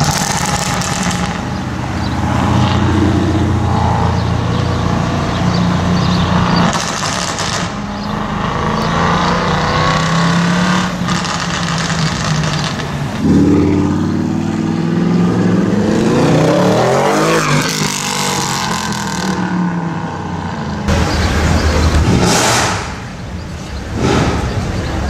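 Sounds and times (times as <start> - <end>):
car engine revving: 0.0 - 25.0.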